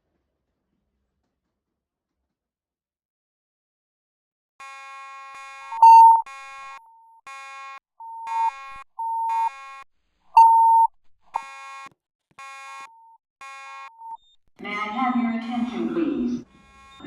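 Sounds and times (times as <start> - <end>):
buzzy fire alarm beep: 4.6 - 9.6, 10.4 - 11.6, 12.4 - 15.0, 16.6 - 17.0
pure loud alarm beep: 5.7 - 6.3, 8.0 - 9.5, 10.4 - 10.9.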